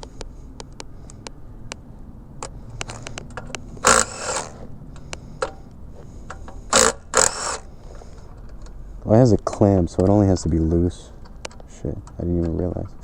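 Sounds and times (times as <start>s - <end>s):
metal scraping: 2.4s - 8.8s
ratchet clicking: 2.8s - 5.6s, 6.3s - 7.7s.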